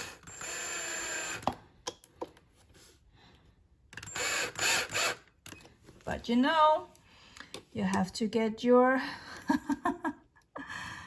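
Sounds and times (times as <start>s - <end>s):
drill driving screws: 0.0s - 1.6s, 4.0s - 5.4s.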